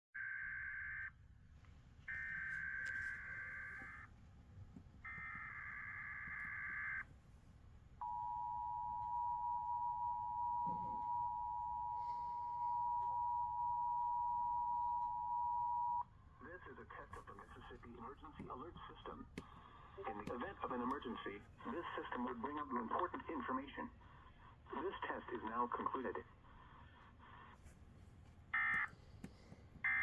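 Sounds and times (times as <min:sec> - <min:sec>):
steady attention tone: 0:08.0 - 0:16.0.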